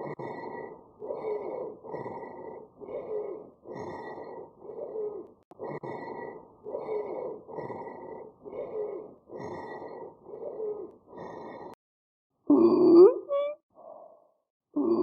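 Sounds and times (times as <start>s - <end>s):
wheezing breaths: 0.0s - 11.8s.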